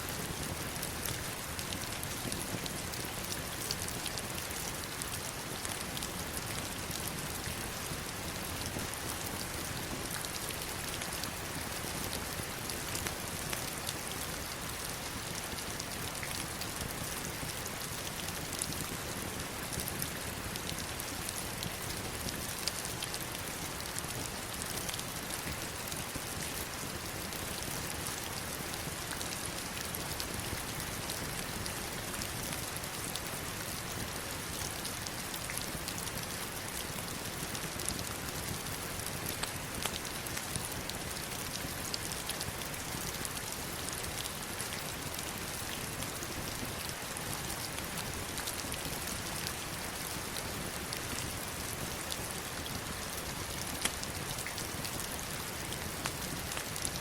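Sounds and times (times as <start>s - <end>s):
heavy rain on stones: 37.0s - 57.0s.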